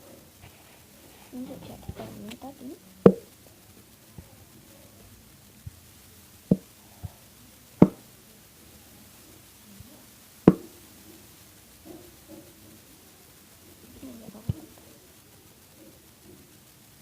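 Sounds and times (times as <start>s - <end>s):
sharp knocks: 7.8s - 8.0s
faint taps: 10.5s - 10.7s.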